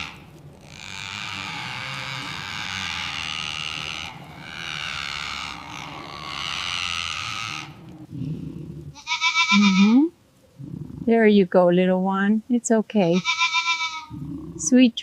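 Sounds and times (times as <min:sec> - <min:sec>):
goat bleating: 0:00.0 - 0:07.9, 0:09.0 - 0:10.1, 0:13.0 - 0:14.2.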